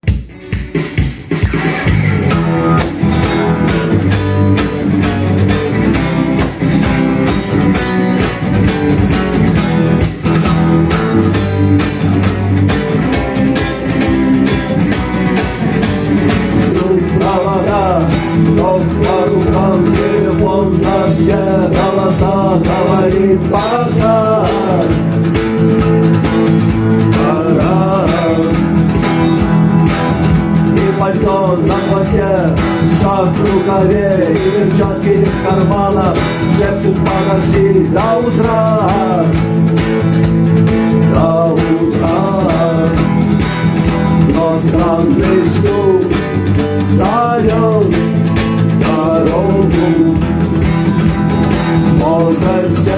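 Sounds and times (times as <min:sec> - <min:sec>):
rock guitars: 0:00.0 - 0:52.9
steady drum beat: 0:00.0 - 0:52.9
wavering lead melody: 0:02.1 - 0:37.2.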